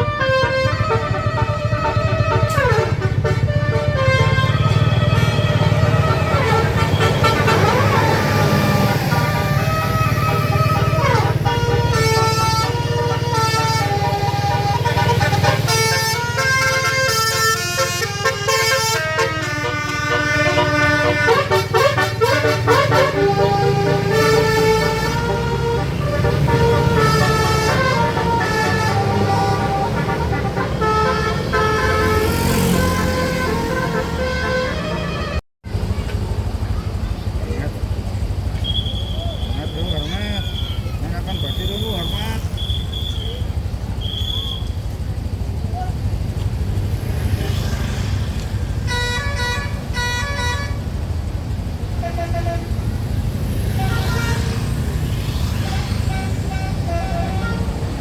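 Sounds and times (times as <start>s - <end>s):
multi-tone air horn tune: 0.0s - 35.4s, 48.6s - 50.9s, 52.0s - 58.0s
bus engine rumble: 0.0s - 58.0s.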